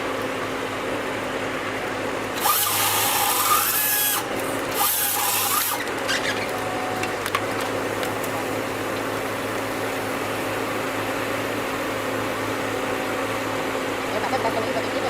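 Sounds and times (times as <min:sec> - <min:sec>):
low machine hum: 0:00.0 - 0:15.0
power saw cutting: 0:02.3 - 0:06.6.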